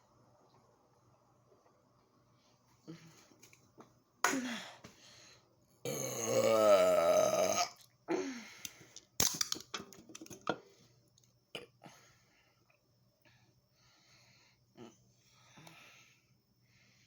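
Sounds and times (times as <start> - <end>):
man belching: 5.8 - 7.8.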